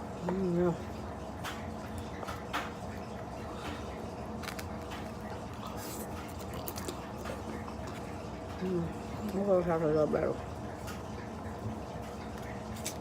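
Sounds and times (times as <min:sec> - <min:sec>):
low background hum: 0:00.0 - 0:13.0
person chewing food: 0:01.8 - 0:09.2.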